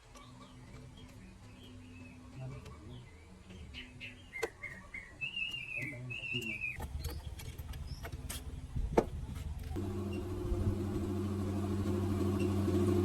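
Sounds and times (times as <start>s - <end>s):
engine running: 9.6s - 13.0s.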